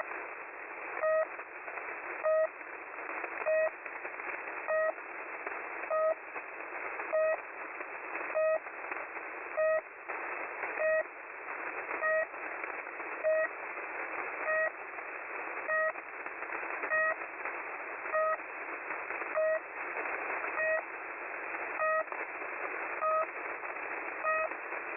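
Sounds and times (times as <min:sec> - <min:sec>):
static hiss: 0:00.0 - 0:24.9
short radio beep: 0:24.2 - 0:24.5.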